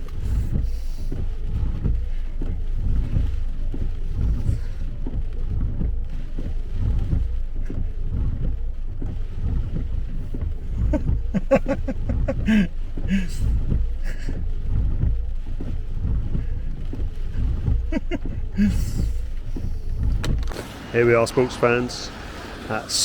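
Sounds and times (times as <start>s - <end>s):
vehicle rumbling on the move: 0.0s - 23.0s.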